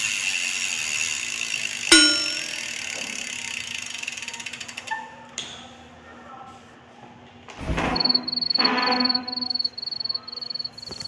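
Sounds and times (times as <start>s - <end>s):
rapid ratchet clicking: 0.0s - 4.9s
metal clang ringing: 1.9s - 3.2s.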